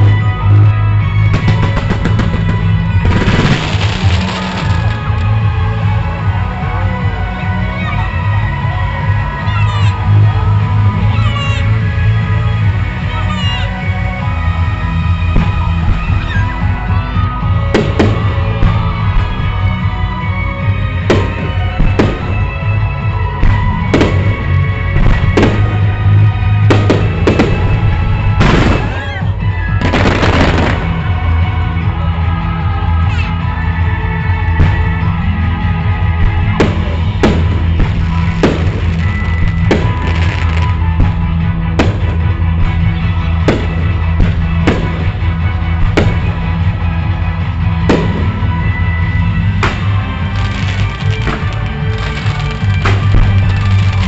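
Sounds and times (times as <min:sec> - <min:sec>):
loud show music: 0:00.0 - 0:54.0
fireworks bangs: 0:01.2 - 0:05.9, 0:21.0 - 0:31.3, 0:36.1 - 0:46.7, 0:47.7 - 0:54.0
fireworks crackling: 0:01.2 - 0:06.4, 0:20.9 - 0:31.5, 0:36.0 - 0:54.0.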